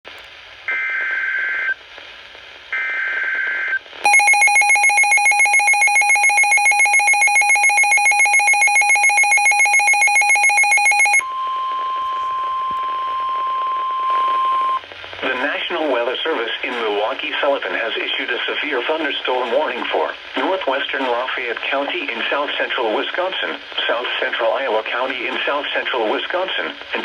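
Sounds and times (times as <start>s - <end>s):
harsh rapid alarm beeping: 4.1s - 11.2s
steady warning alarm tone: 4.1s - 11.2s
two-tone data screech: 4.1s - 11.2s.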